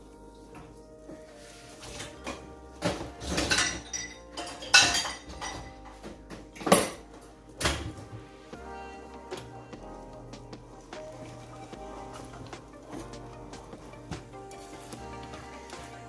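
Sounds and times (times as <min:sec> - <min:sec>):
background music: 0:00.0 - 0:16.0
utensils clinking against dishes: 0:01.8 - 0:08.0.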